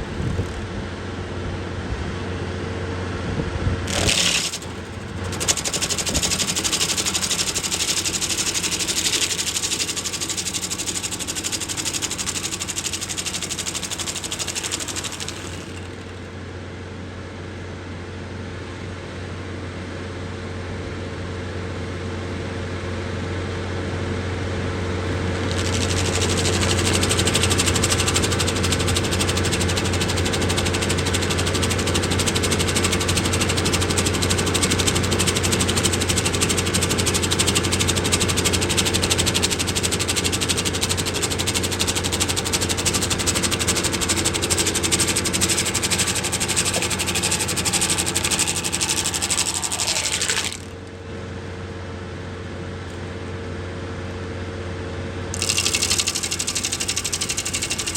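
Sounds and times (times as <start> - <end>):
stump grinder grinding: 0.0 - 0.7, 3.8 - 16.4, 24.6 - 51.0, 55.3 - 57.9
diesel engine running: 0.0 - 17.0, 21.8 - 54.4
cutter wheel whine spinning down: 3.8 - 16.4, 24.7 - 50.9, 55.3 - 57.9.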